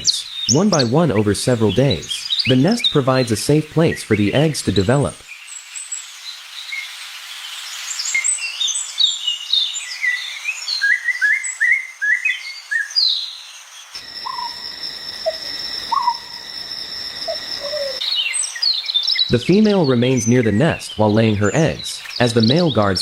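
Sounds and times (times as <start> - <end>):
small birds chirping: 0.0 - 23.0
steady high-pitched buzz: 13.4 - 18.1.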